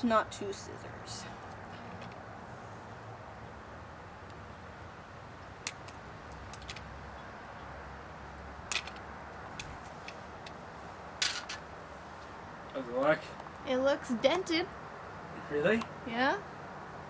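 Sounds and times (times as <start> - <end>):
background noise: 0.0 - 17.0.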